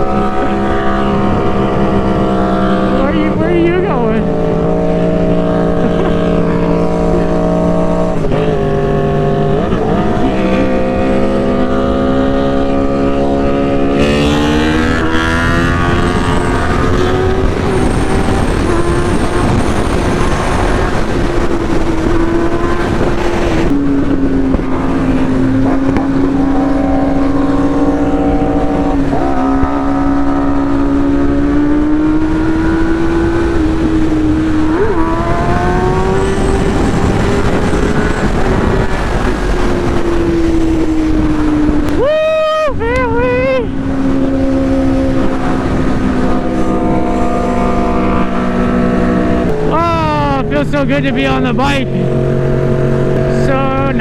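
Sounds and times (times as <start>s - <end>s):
motorcycle engine: 0.0s - 54.0s
wind and road noise: 0.0s - 54.0s.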